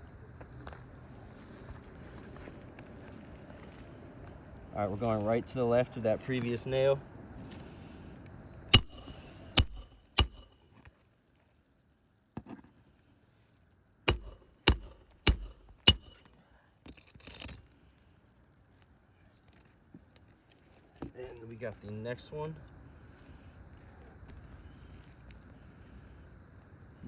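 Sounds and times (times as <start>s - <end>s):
metal hammer blows on nail: 8.8s - 10.7s, 14.1s - 16.4s.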